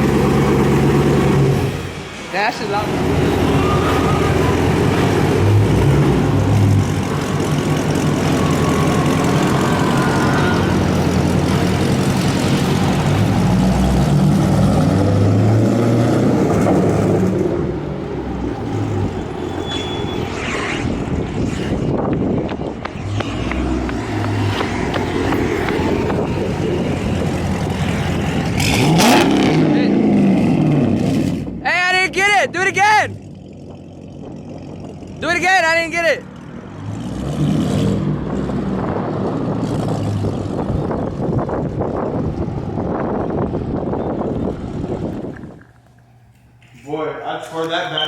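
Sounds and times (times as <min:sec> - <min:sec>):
loud car exhaust: 0:00.0 - 0:31.6.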